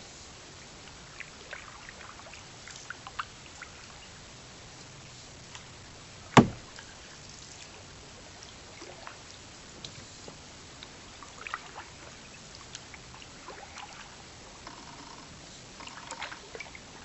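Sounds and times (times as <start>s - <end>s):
loud sharp ringing knock: 6.4s - 6.6s
small splashes: 11.3s - 14.2s
water dripping off paddle: 15.8s - 16.8s.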